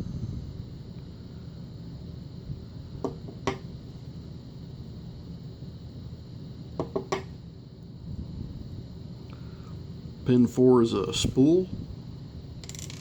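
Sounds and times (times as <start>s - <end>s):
steady low hum: 0.0s - 13.0s
small metal parts clicking: 12.6s - 13.0s.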